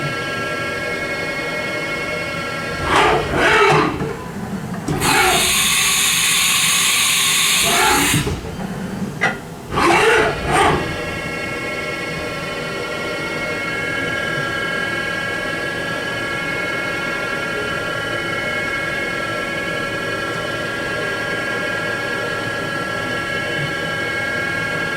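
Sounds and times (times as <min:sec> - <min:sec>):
machine whine: 0:01.6 - 0:15.0.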